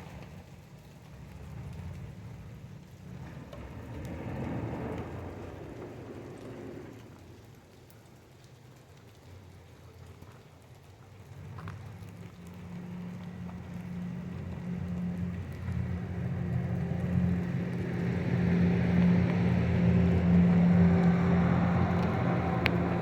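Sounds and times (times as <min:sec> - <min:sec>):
vehicle engine humming: 0:11.3 - 0:23.0.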